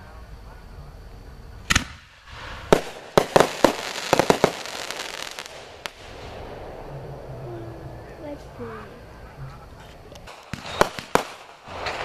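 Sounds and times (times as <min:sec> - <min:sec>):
firework bang: 0:01.6 - 0:08.2, 0:10.2 - 0:12.0
firework cracks and pops: 0:01.7 - 0:06.4, 0:10.2 - 0:12.0.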